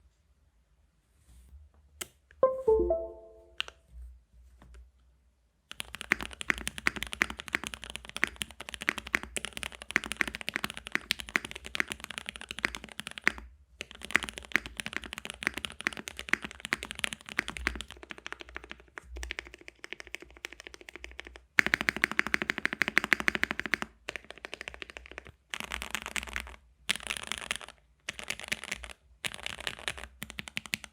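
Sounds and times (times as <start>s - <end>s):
mechanical keyboard typing: 5.7s - 13.3s, 13.9s - 30.9s.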